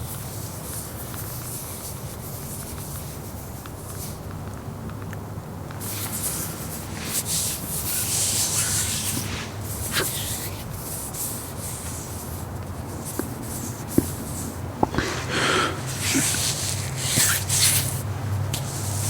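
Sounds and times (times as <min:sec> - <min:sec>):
hands rubbing together: 0:05.8 - 0:19.0.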